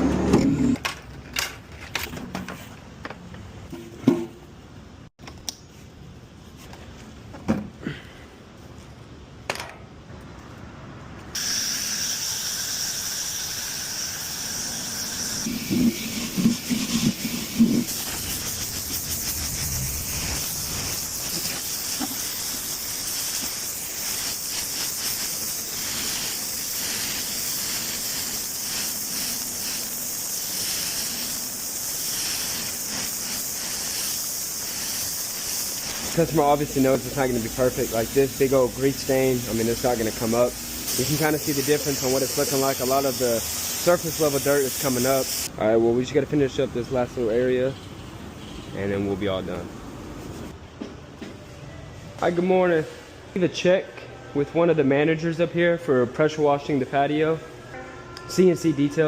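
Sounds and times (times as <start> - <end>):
pressure washer spraying: 11.4 - 45.5.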